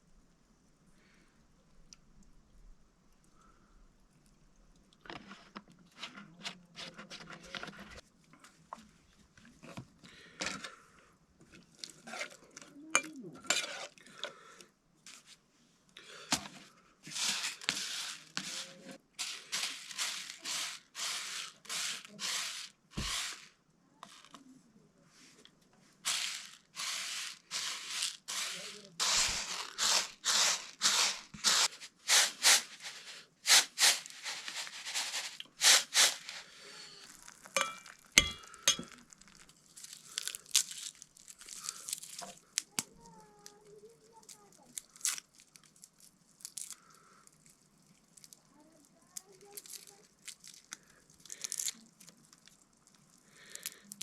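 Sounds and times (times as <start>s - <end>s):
dishes and utensils clinking: 37.6s - 39.0s.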